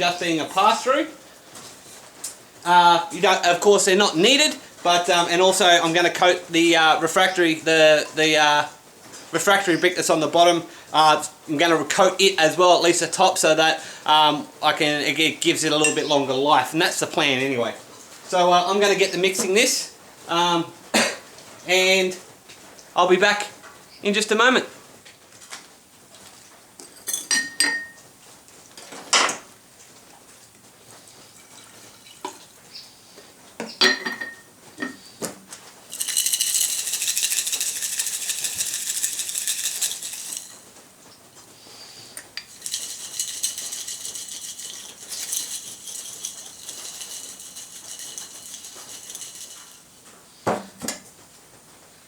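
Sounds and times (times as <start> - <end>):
jar and lid clinking: 35.9 - 40.6, 42.4 - 49.8
mortar rattling and sloshing in jar: 35.9 - 40.7, 42.4 - 50.0.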